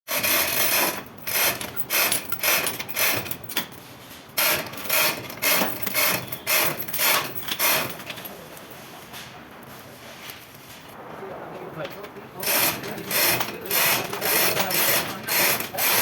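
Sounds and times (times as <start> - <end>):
hand tool rasping a surface: 12.4 - 16.0.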